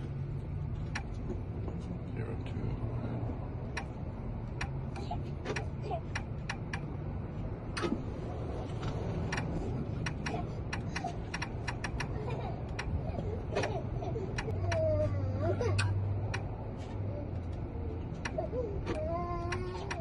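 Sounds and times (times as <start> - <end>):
small hard parts clicking: 3.6 - 7.0, 8.7 - 15.0, 15.6 - 20.0.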